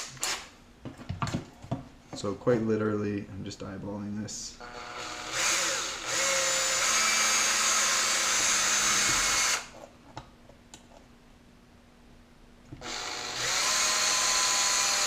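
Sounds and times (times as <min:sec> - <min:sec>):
power drill drilling: 0:04.6 - 0:09.7, 0:12.8 - 0:15.0.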